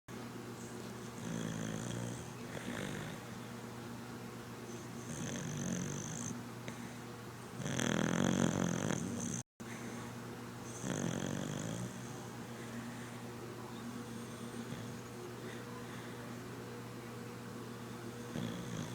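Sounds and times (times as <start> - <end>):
dog snoring: 1.0 - 3.3, 4.8 - 6.4, 7.6 - 9.4, 10.6 - 12.2, 14.1 - 15.1, 18.2 - 18.9.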